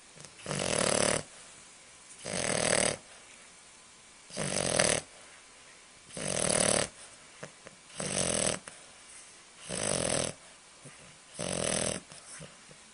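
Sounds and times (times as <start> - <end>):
puppy snoring: 0.2 - 1.4, 2.2 - 3.2, 4.3 - 5.2, 6.1 - 8.9, 9.6 - 12.8.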